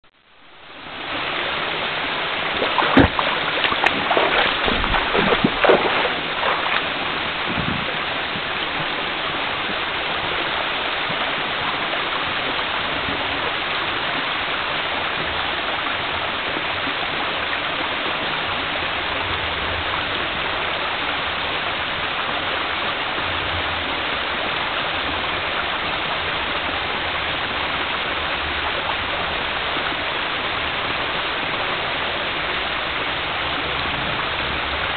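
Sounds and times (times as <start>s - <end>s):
waterfall rushing: 0.7s - 34.9s
sharp knocks: 2.9s - 6.7s.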